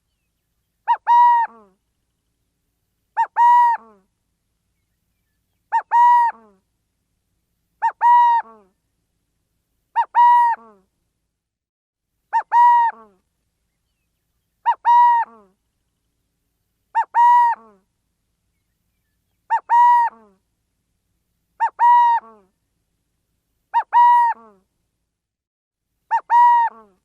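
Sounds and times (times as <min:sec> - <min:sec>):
owl calling: 0:00.8 - 0:01.7, 0:03.2 - 0:04.0, 0:05.6 - 0:06.5, 0:07.8 - 0:08.6, 0:09.9 - 0:10.6, 0:12.3 - 0:13.1, 0:14.6 - 0:15.4, 0:16.9 - 0:17.7, 0:19.3 - 0:20.3, 0:21.6 - 0:22.4, 0:23.7 - 0:24.4, 0:26.1 - 0:26.9.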